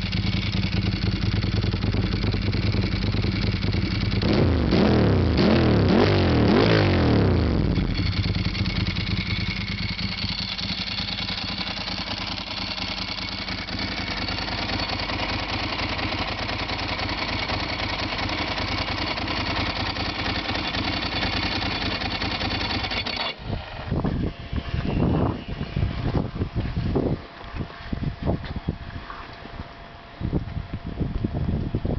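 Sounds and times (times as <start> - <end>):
motorcycle engine revving: 0.0 - 28.3.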